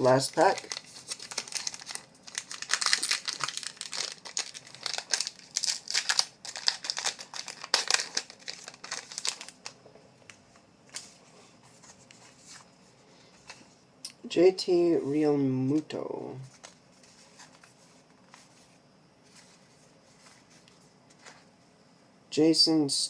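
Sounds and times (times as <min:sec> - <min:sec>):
plastic wrapper crinkling and tearing: 0:00.1 - 0:09.8.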